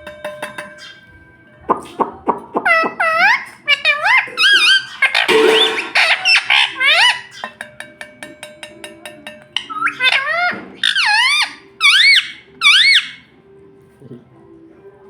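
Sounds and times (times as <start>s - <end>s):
parrot whistling: 2.6s - 7.4s, 9.6s - 13.3s
parrot squawking: 2.6s - 7.6s, 9.6s - 13.3s.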